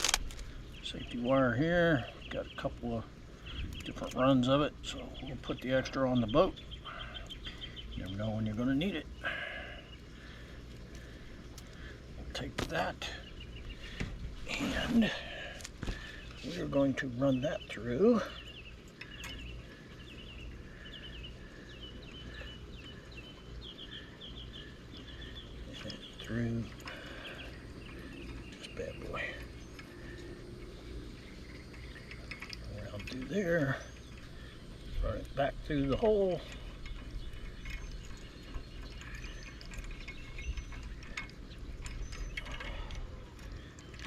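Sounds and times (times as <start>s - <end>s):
bird chirping: 0.0s - 44.0s
steady low rumble: 0.0s - 44.0s
metal wire ticking and clicking: 25.0s - 44.0s.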